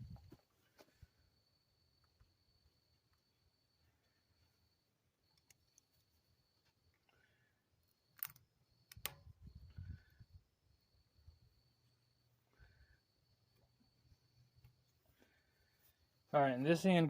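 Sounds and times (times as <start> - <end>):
sharp handling clicks: 8.1 - 9.3.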